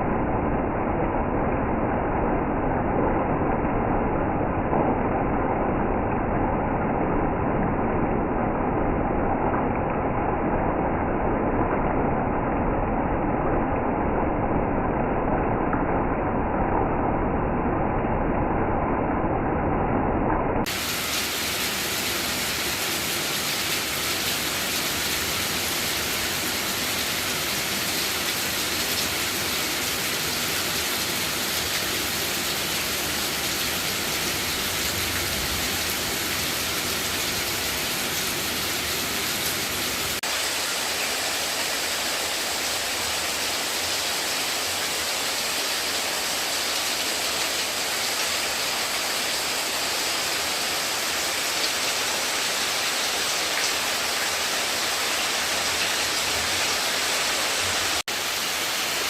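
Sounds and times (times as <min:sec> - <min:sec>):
rushing water: 0:20.6 - 0:59.0.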